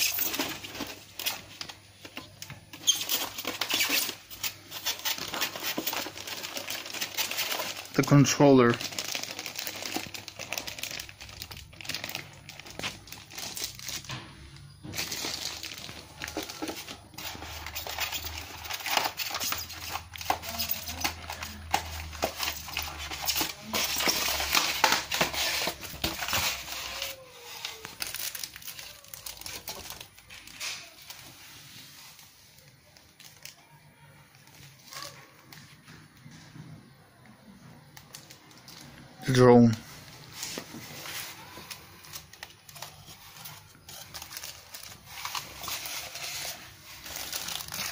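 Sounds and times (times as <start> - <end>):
plastic packaging crinkling: 0.0 - 35.8, 37.8 - 47.9.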